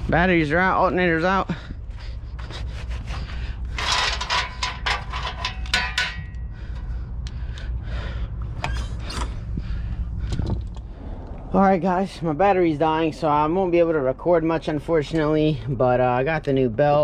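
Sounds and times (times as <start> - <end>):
steady low rumble: 0.0 - 17.0
rubbing scraping and knocking: 2.4 - 6.2.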